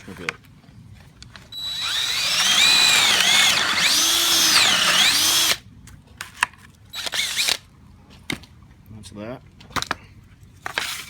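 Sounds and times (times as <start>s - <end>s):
power drill motor whine: 1.5s - 5.6s, 7.0s - 7.6s.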